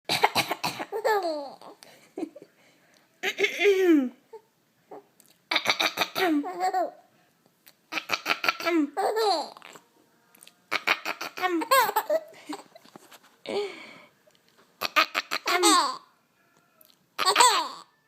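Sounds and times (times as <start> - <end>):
baby giggling: 0.9 - 2.4, 3.2 - 7.0, 7.9 - 9.8, 10.7 - 12.9, 14.8 - 16.0, 17.2 - 17.9.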